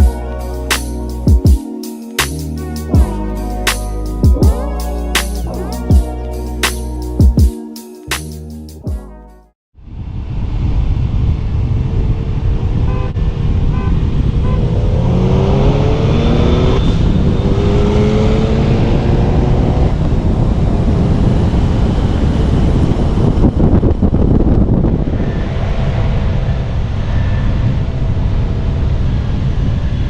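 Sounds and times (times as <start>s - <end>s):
road rumble: 0.0s - 1.4s, 9.8s - 30.0s
car engine accelerating hard: 14.1s - 23.8s.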